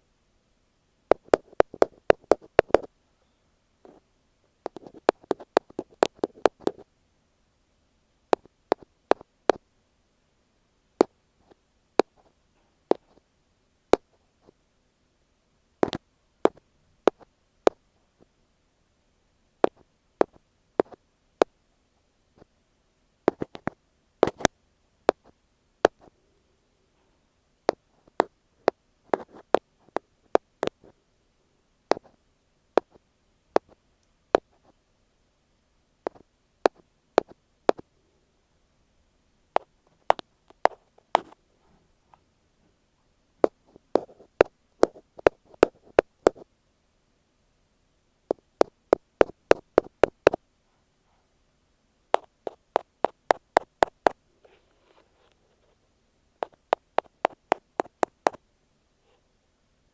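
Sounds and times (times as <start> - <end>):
ear pick tapping microphone: 1.1 - 2.9, 4.6 - 6.8, 8.3 - 9.6, 23.3 - 24.5, 48.3 - 50.4, 52.2 - 54.2, 56.4 - 58.4.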